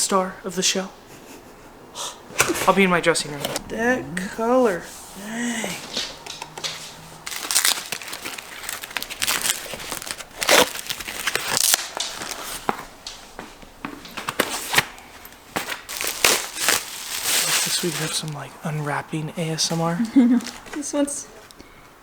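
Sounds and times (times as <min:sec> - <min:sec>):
packaging wrap crinkling and tearing: 0:05.8 - 0:18.4.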